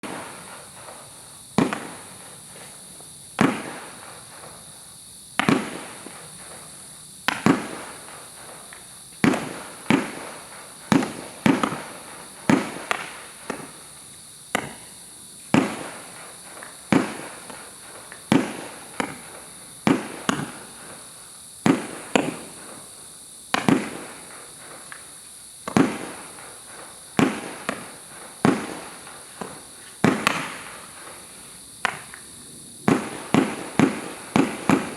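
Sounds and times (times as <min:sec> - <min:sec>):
firework shots banging: 0:01.6 - 0:02.4, 0:03.4 - 0:04.6, 0:05.4 - 0:06.7, 0:07.3 - 0:13.9, 0:14.5 - 0:14.9, 0:15.5 - 0:20.8, 0:23.5 - 0:34.9.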